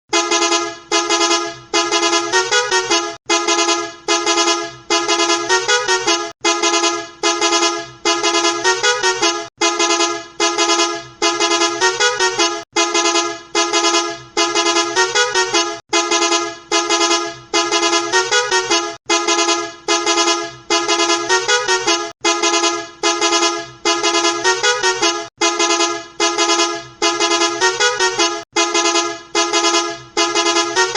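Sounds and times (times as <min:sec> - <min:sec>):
musical bus horn honking a tune: 0:00.1 - 0:30.9.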